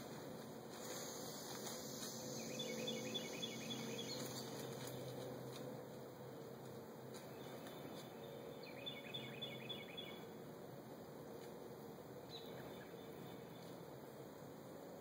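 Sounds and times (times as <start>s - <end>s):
faint outdoor background noise: 0.0s - 15.0s
small bird chirping: 2.0s - 4.9s.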